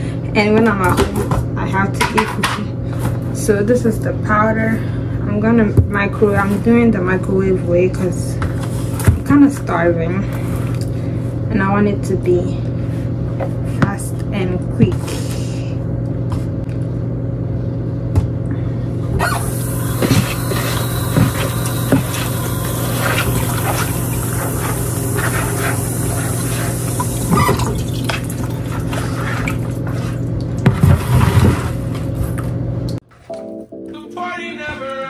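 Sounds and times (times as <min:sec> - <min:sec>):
low electrical hum: 0:00.0 - 0:33.0
water running from tap: 0:19.2 - 0:30.6.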